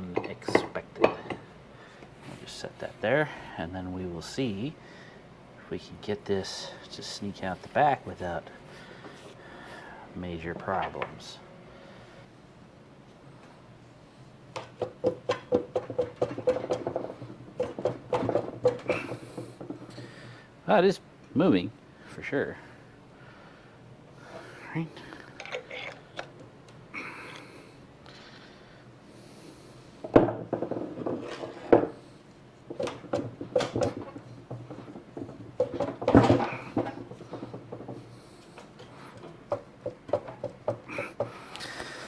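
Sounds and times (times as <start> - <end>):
heavy metal parts clunking: 0.0 - 2.6, 14.6 - 20.4, 30.0 - 42.0.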